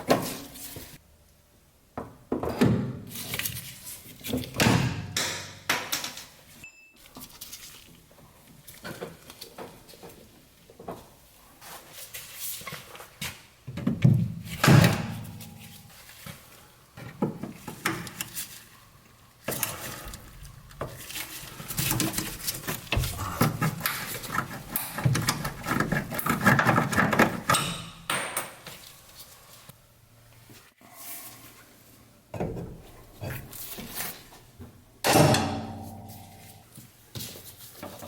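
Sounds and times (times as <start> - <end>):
hand tools clicking and knocking: 21.6 - 28.6.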